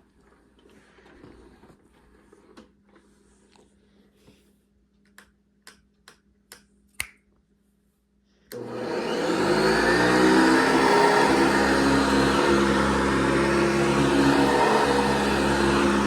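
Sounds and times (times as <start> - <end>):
vacuum cleaner motor whining: 8.6 - 16.0.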